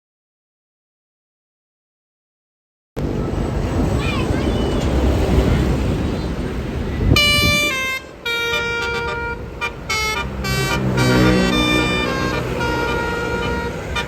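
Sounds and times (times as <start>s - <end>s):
engine and street noise: 3.0s - 14.0s
bus musical horn melody: 7.0s - 14.0s.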